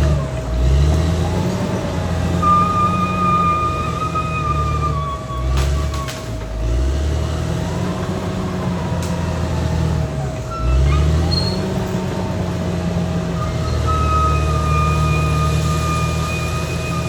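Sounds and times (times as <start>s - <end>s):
bulldozer diesel engine working: 0.0s - 17.0s
short high squeals: 2.4s - 6.4s, 10.4s - 12.0s, 13.3s - 17.0s.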